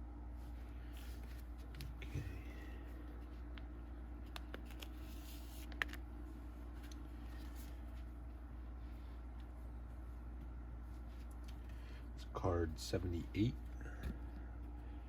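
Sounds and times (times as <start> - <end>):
steady low hum: 0.0 - 15.0
cards clicking and rustling: 3.5 - 6.0.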